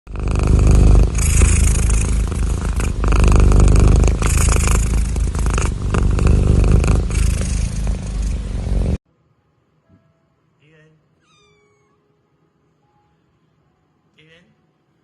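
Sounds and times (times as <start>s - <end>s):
cat snoring: 0.1s - 9.0s.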